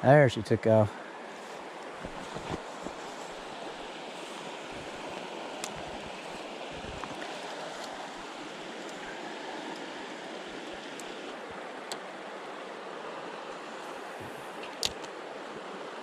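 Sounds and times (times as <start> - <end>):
stream water rushing: 0.3 - 16.0.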